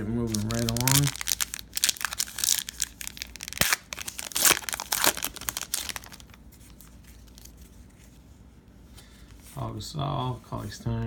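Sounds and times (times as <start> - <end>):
wrapper tearing and crinkling: 0.0 - 7.6.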